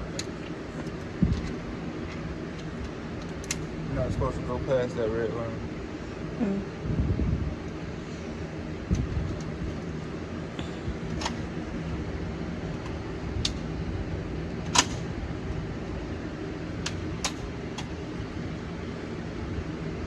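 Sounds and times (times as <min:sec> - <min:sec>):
steady low rumble: 0:00.0 - 0:20.0.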